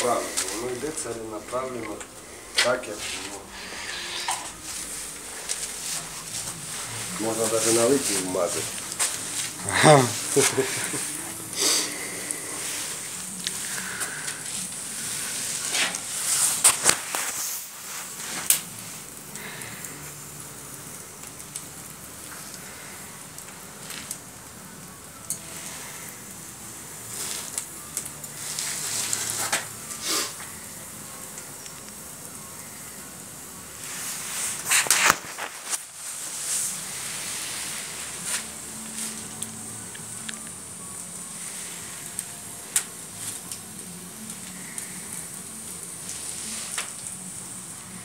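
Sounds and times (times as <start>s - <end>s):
fire crackling and popping: 0.0s - 48.0s
wood fire hissing: 0.0s - 48.0s.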